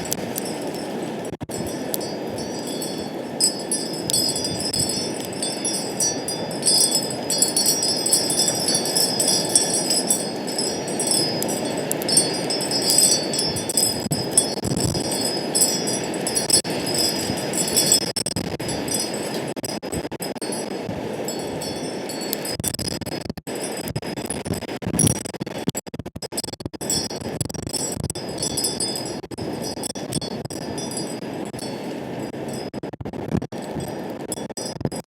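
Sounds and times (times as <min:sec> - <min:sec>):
wind chimes ringing: 0:00.0 - 0:19.6, 0:20.4 - 0:22.6, 0:28.2 - 0:32.6
low rush of wind: 0:00.0 - 0:23.9, 0:26.8 - 0:35.0.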